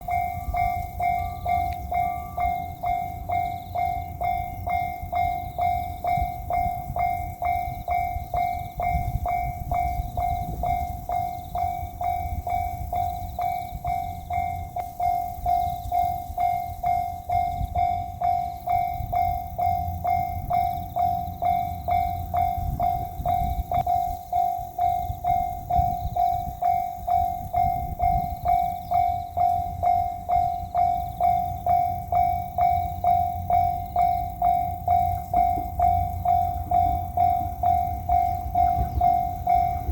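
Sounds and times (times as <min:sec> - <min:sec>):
level-crossing warning bell: 0:00.0 - 0:39.9
low rumble: 0:34.4 - 0:39.9.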